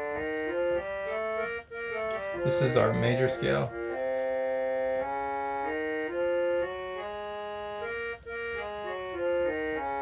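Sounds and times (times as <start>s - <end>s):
harmonium playing a scale: 0.0s - 10.0s.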